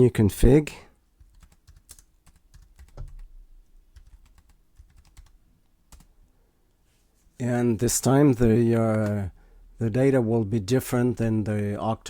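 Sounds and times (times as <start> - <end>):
computer keyboard typing: 1.2 - 6.1, 8.8 - 9.2.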